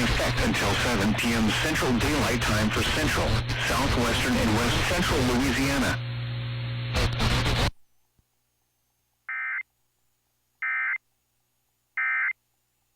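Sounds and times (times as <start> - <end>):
radio static crackling: 0.0 - 6.1, 6.7 - 7.8.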